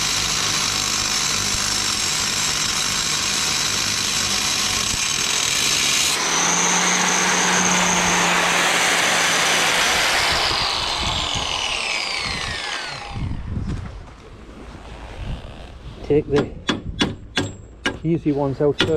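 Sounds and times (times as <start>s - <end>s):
angle grinder cutting metal: 0.0s - 13.5s.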